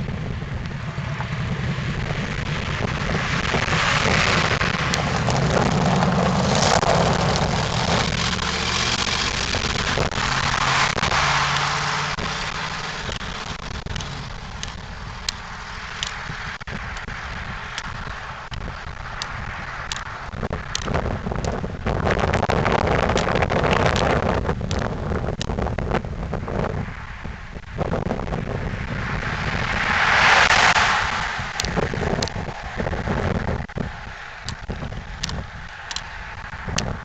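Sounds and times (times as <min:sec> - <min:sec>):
sharp ticks: 0:06.7 - 0:17.1, 0:17.7 - 0:21.6, 0:22.8 - 0:25.6, 0:31.5 - 0:37.0
car engine driving past: 0:28.8 - 0:34.4.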